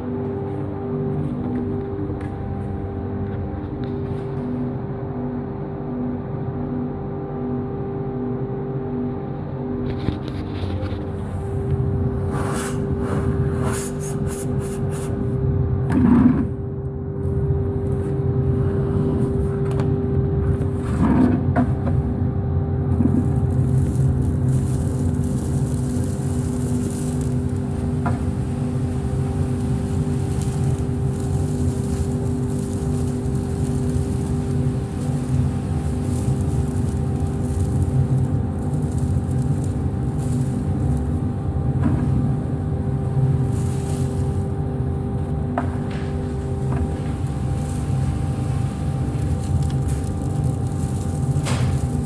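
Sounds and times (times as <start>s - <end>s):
dust extractor humming: 10.6s - 52.0s.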